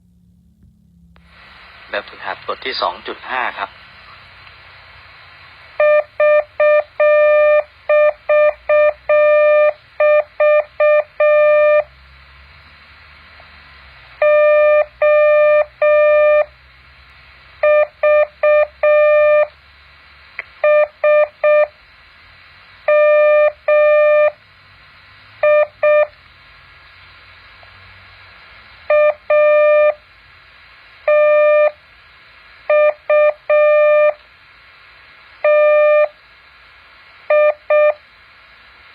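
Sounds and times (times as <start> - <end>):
morse code tone: 5.8 - 11.9, 14.2 - 16.5, 17.6 - 19.5, 20.6 - 21.7, 22.9 - 24.4, 25.4 - 26.1, 28.9 - 30.0, 31.1 - 31.8, 32.7 - 34.2, 35.4 - 36.2, 37.3 - 38.0.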